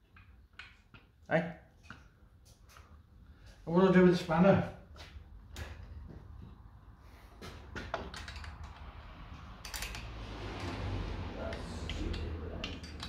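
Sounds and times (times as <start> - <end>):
spanner and fittings clicking: 7.9 - 9.0, 9.6 - 10.8, 11.5 - 13.0.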